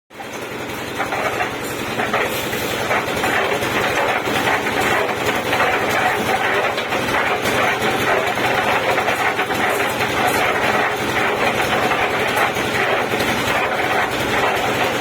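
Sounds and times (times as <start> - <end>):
concrete mixer engine drone: 0.1 - 15.0
mixer rattling: 0.1 - 15.0.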